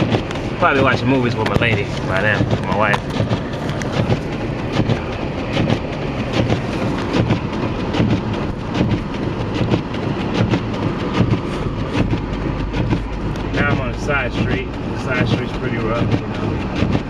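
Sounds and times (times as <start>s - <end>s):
irregular clicks and knocks: 0.0s - 17.0s
tyres rumbling over packed snow: 0.0s - 17.0s.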